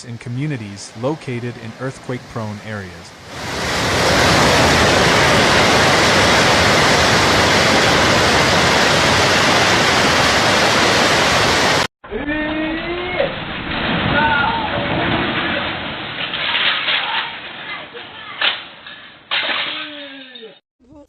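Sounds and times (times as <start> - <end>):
loud steady rushing noise: 0.5 - 11.9.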